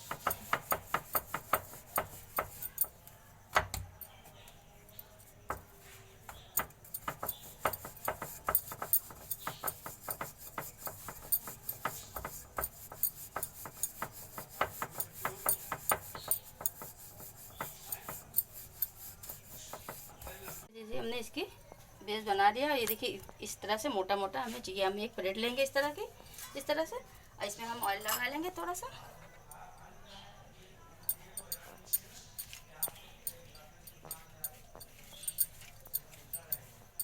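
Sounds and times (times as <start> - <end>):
rolling pin on dough: 0.0 - 4.4, 5.2 - 20.7.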